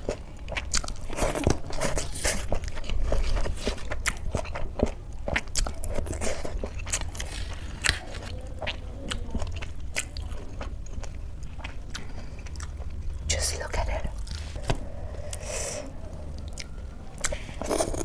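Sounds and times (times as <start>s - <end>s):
chewing and crunching food: 0.0s - 18.0s
scrapes: 1.1s - 4.0s, 6.0s - 8.5s, 17.2s - 18.0s.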